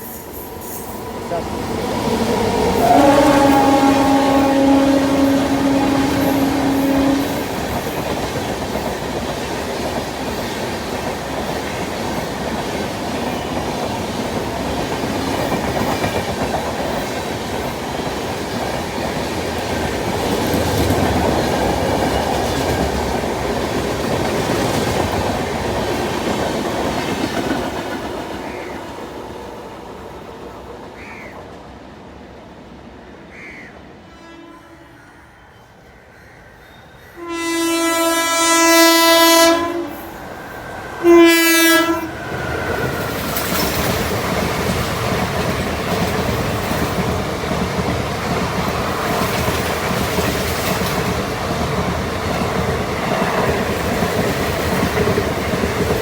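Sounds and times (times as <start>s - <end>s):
train wheels clattering on rail: 0.0s - 31.7s, 41.6s - 56.0s
train horn: 2.2s - 8.0s, 34.0s - 35.4s, 37.2s - 40.2s, 41.0s - 42.9s.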